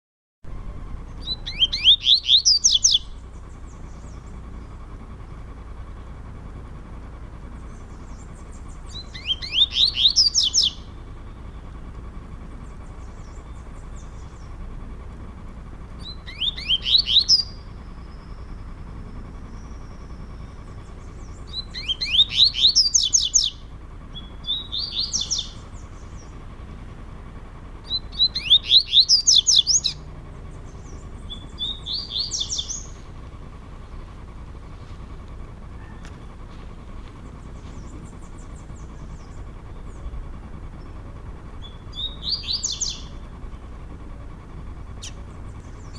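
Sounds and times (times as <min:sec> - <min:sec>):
birds singing rapid phrases: 0:00.5 - 0:45.9.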